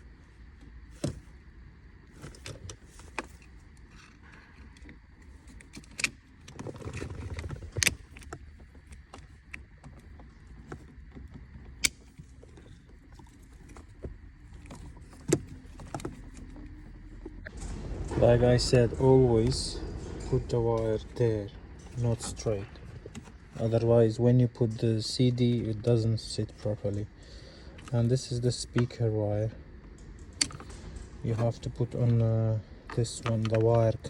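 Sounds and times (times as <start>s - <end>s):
plastic parts clicking and knocking: 2.1s - 21.2s, 29.8s - 34.0s.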